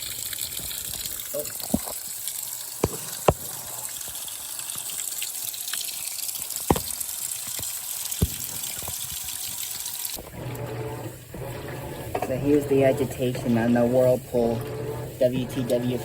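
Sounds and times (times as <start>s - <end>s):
sharp drips or clicks: 0.0s - 10.7s
water spraying into washer: 0.0s - 16.0s
washing machine low hum: 10.2s - 16.0s.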